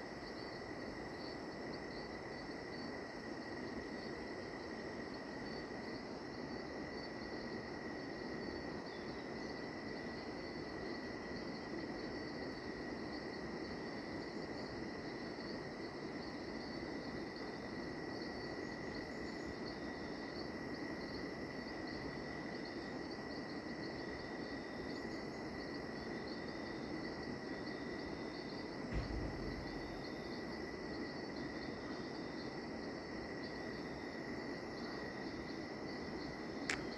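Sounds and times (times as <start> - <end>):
insect chorus: 0.0 - 36.9
low thump: 28.9 - 30.4.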